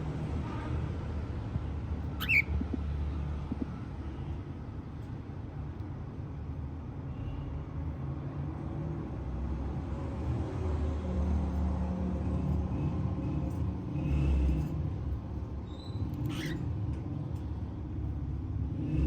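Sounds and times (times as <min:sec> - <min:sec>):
cockatiel chirps: 0:02.1 - 0:02.9, 0:15.7 - 0:16.6.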